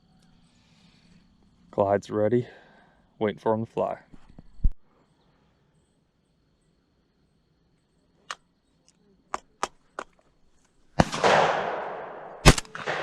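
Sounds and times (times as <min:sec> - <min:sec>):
shotgun shot: 0:11.0 - 0:13.0.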